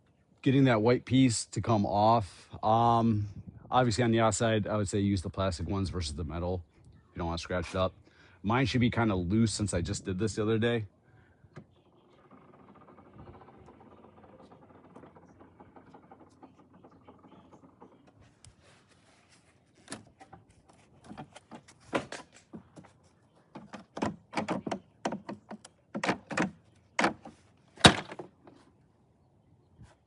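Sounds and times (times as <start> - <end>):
plastic trim clicks and knocks: 23.6 - 28.3.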